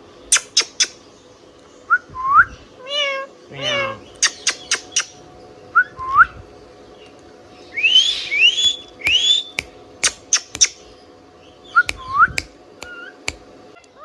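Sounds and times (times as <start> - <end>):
parakeet chirps: 0.3 - 1.0, 4.2 - 5.2, 8.0 - 10.8
parakeet whistling: 0.3 - 1.0, 4.2 - 5.1, 7.9 - 10.8.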